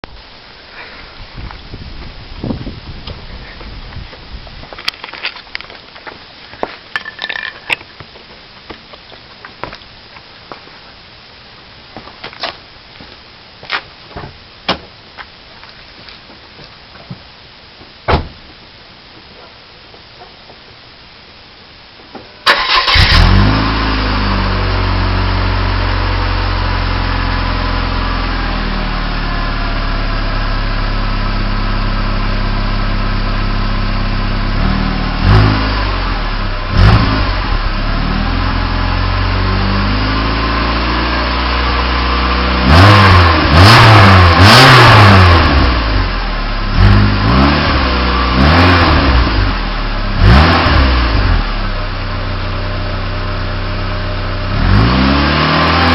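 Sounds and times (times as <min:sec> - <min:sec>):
car engine idling and revving: 0:22.4 - 0:55.9.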